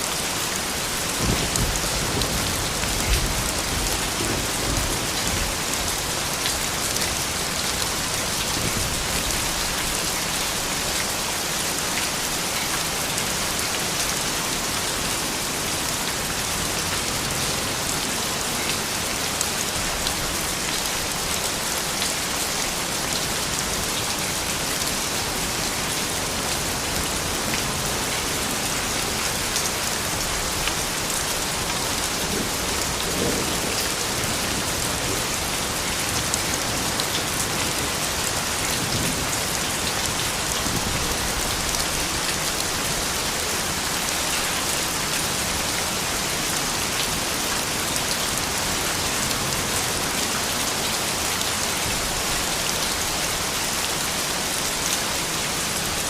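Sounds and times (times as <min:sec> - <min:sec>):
steady rain hissing: 0:00.0 - 0:56.0
raindrops ticking on hard surfaces: 0:00.2 - 0:14.4.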